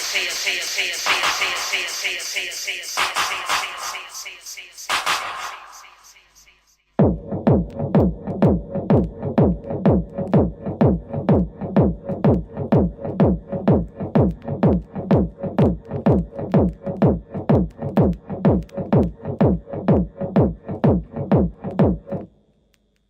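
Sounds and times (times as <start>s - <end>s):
techno music: 0.0s - 5.9s, 7.0s - 22.2s.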